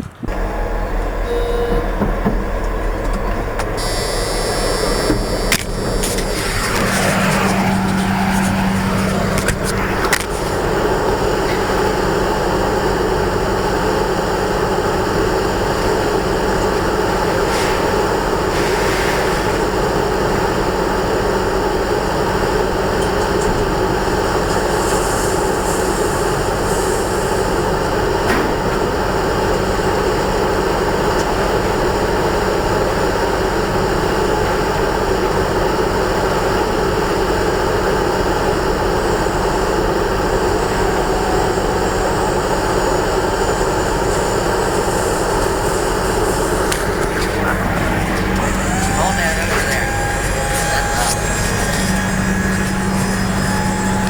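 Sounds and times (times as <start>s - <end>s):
pickup truck engine: 0.0s - 54.0s
road noise: 0.0s - 54.0s.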